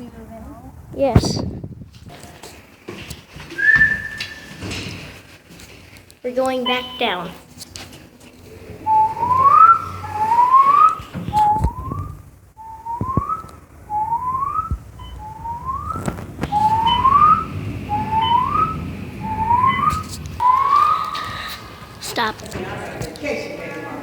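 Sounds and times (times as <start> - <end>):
rising whistle-like tone: 3.6 - 4.8, 8.8 - 21.9.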